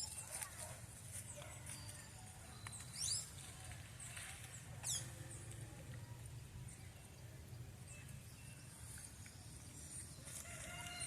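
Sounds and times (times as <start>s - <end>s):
faint bird chirps: 1.2s - 5.6s.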